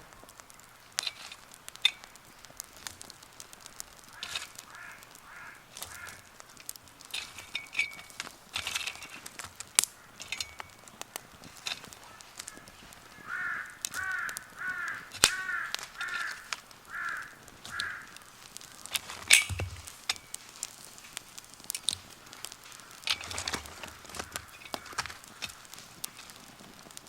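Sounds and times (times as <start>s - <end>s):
wood fire crackling: 0.0s - 27.0s
crow cawing: 4.0s - 6.4s, 9.9s - 19.9s, 22.2s - 25.8s.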